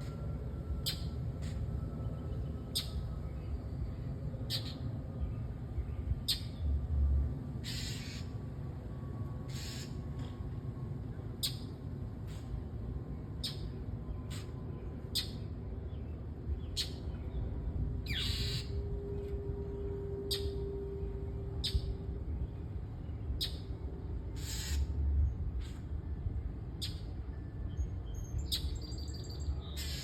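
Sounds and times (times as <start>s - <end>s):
bird scolding calls: 7.6s - 8.2s, 9.5s - 9.9s, 24.4s - 24.8s.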